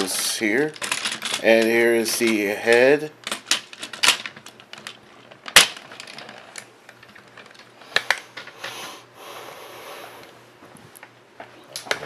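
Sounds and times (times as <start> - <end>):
plastic parts clicking together: 0.6 - 8.5.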